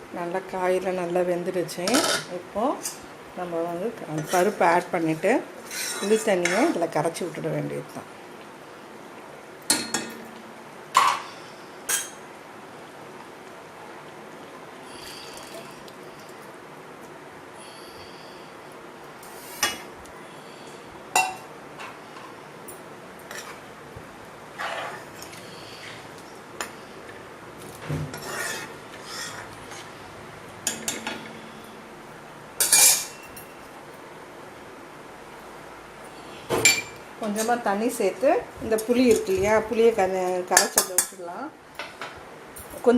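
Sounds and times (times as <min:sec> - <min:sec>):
metal spoon scraping a pot: 0:04.1 - 0:04.7, 0:05.7 - 0:06.8, 0:28.1 - 0:29.9
metal utensils clinking on pot: 0:30.6 - 0:31.4, 0:32.6 - 0:33.5.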